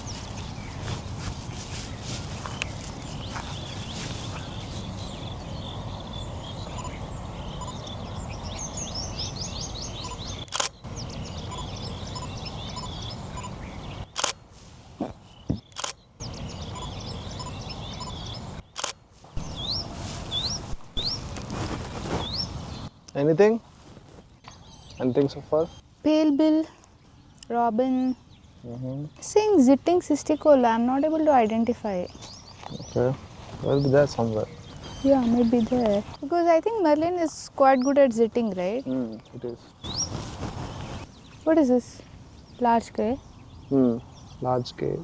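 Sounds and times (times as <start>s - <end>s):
birds chirping: 0.0s - 45.0s
outdoor background noise: 0.0s - 45.0s
sharp clicks: 10.1s - 10.8s, 14.1s - 14.4s, 15.6s - 16.0s, 18.7s - 19.0s.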